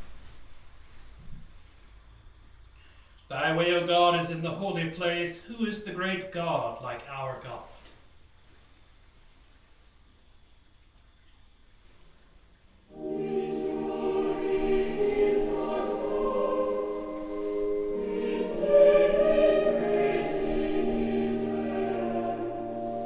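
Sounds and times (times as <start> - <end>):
voices singing in harmony: 12.9 - 23.0.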